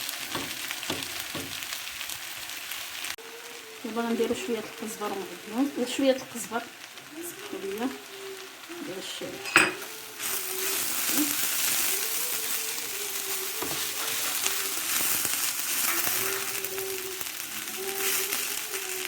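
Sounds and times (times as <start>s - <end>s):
food sizzling in a hot pan: 0.0s - 19.0s.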